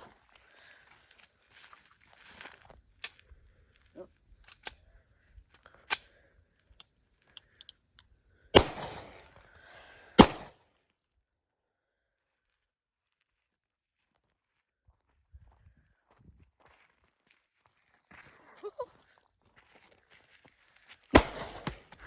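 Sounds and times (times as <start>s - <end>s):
gun handling clicks: 5.9s - 6.2s, 6.8s - 7.8s
gunshots with echo: 8.6s - 9.3s, 10.2s - 10.5s, 21.2s - 21.9s.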